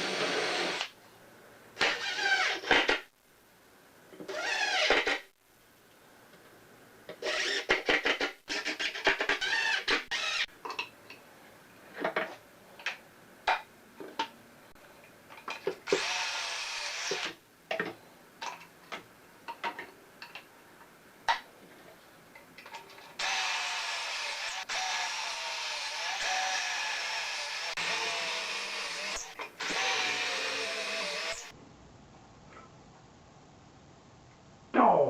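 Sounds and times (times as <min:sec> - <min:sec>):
power drill drilling into wood: 0:00.0 - 0:00.9, 0:04.3 - 0:05.1, 0:09.4 - 0:10.5, 0:15.9 - 0:17.4, 0:23.2 - 0:31.5.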